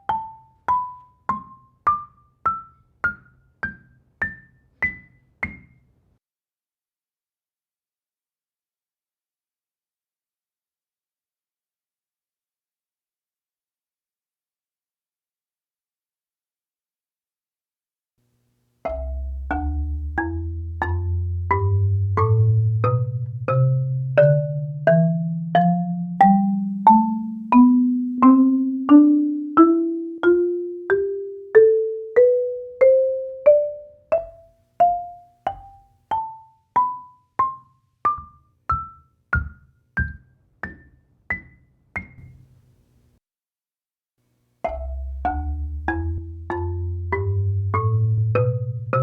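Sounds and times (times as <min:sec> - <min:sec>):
marimba rising scale: 0:18.9 - 0:35.2, 0:44.7 - 0:49.0.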